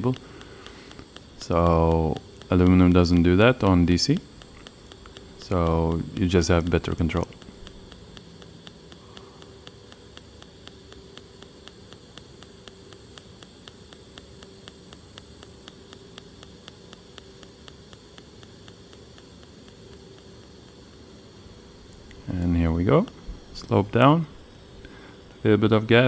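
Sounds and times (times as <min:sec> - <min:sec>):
welding arc hissing and ticking: 0:00.0 - 0:26.0.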